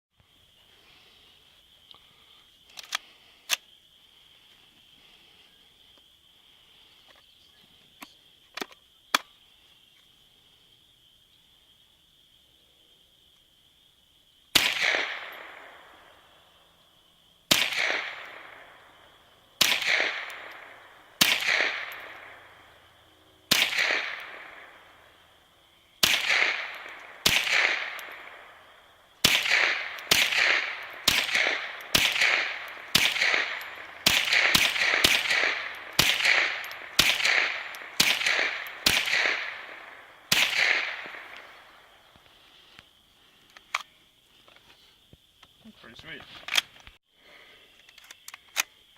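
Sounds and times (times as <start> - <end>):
rifle shots echoing: 14.5 - 16.4, 17.5 - 25.4, 26.0 - 42.0.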